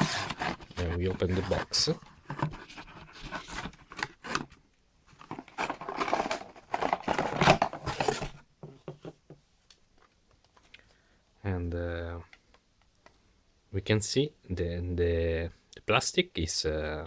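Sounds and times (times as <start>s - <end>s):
cardboard box being opened: 0.0s - 4.6s, 5.2s - 8.4s.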